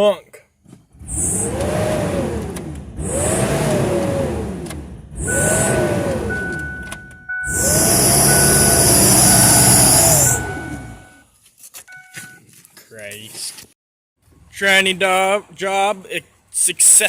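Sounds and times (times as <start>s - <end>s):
vehicle engine revving: 0.9s - 11.2s
high-pitched whine: 5.2s - 11.2s.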